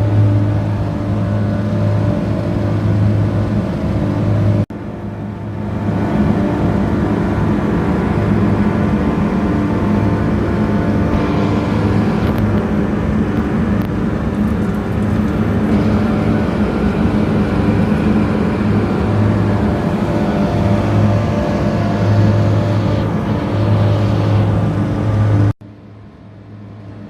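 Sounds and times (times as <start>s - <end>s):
compressor machine hum: 0.0s - 27.0s
noisy whir: 0.0s - 27.0s.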